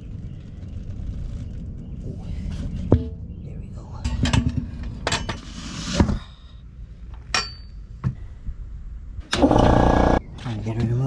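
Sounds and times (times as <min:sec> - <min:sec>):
loud rattling: 0:09.3 - 0:10.2.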